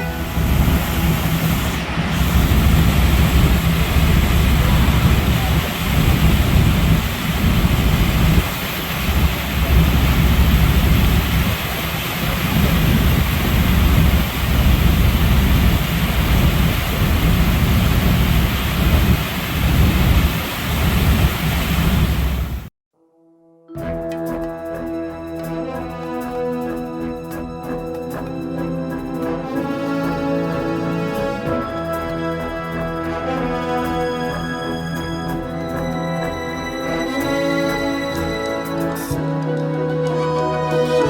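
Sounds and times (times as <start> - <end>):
wind buffeting microphone: 0.0 - 22.7.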